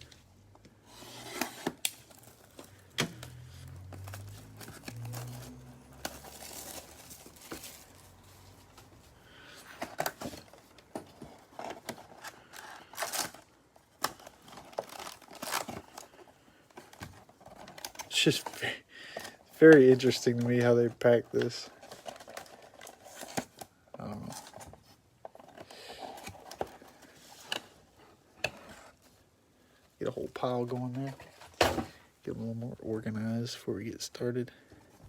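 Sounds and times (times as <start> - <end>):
wrappers crinkling: 1.8 - 8.7, 12.2 - 16.2.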